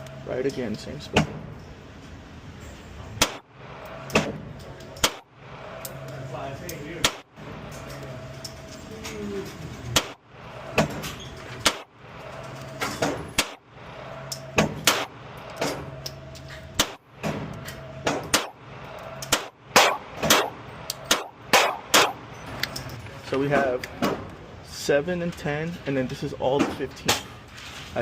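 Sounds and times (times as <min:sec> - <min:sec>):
low steady hum: 0:00.0 - 0:28.0
pistol shots: 0:03.2 - 0:03.5, 0:05.0 - 0:05.3, 0:07.0 - 0:07.3, 0:10.0 - 0:10.2, 0:11.6 - 0:11.9, 0:13.4 - 0:13.6, 0:14.6 - 0:15.1, 0:16.8 - 0:17.0, 0:18.2 - 0:18.6, 0:19.3 - 0:22.2.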